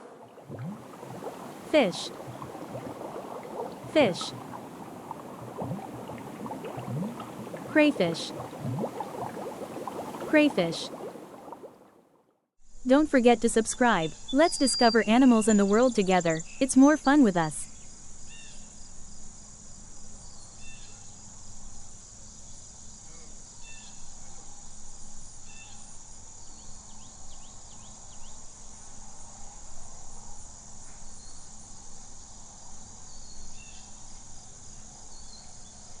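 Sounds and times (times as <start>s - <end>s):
crickets chirping: 0.0s - 11.9s.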